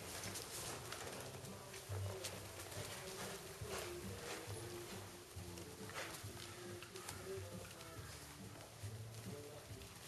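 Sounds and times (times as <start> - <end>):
background music with held notes: 0.0 - 10.0.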